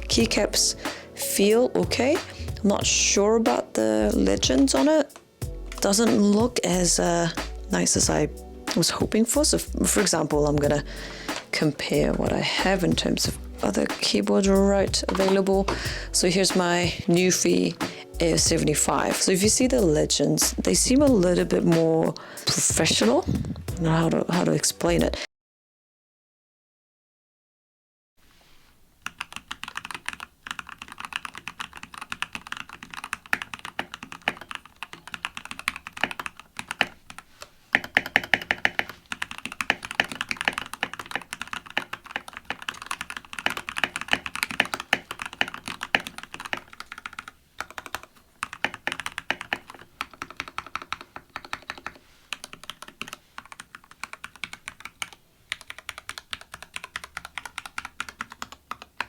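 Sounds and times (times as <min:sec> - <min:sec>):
typing on mechanical keyboard: 0:10.0 - 0:14.4, 0:15.0 - 0:18.1, 0:29.0 - 0:59.0.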